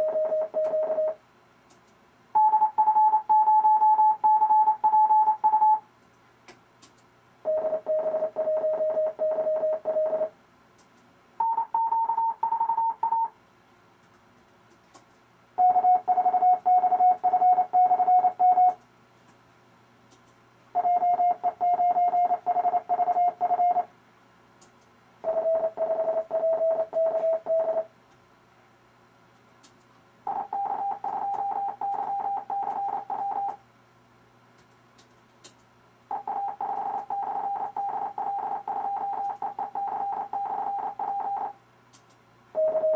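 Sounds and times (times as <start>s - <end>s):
morse code tones: 2.4s - 5.8s, 7.5s - 10.3s, 11.4s - 13.3s, 15.6s - 18.8s, 20.8s - 23.8s, 30.3s - 33.6s, 36.1s - 41.5s, 42.6s - 42.9s.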